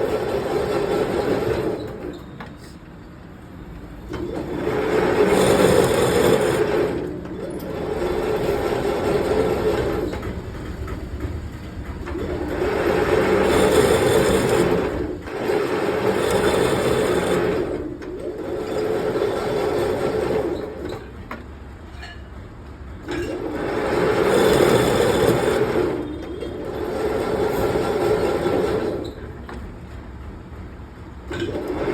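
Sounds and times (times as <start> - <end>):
machine tool running: 4.1 - 21.0, 23.1 - 29.4.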